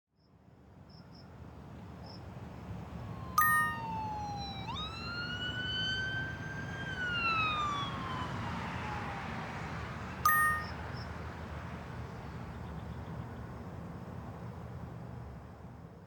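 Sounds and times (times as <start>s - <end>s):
police siren wailing: 2.8s - 10.8s.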